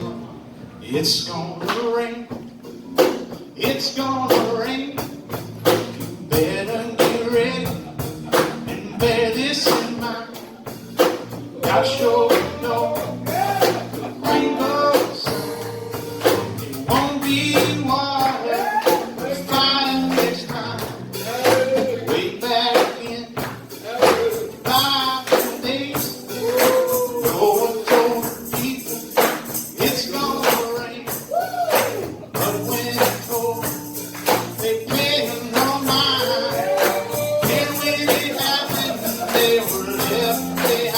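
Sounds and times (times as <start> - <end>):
steady tambourine beat: 2.3 - 40.9
person singing: 11.6 - 40.9.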